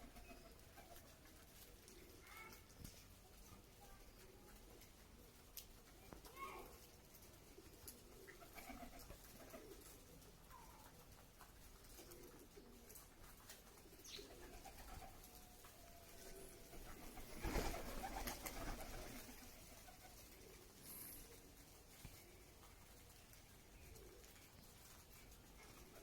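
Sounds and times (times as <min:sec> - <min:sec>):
pigeons cooing: 0:07.4 - 0:15.4, 0:16.0 - 0:22.9, 0:23.7 - 0:26.0.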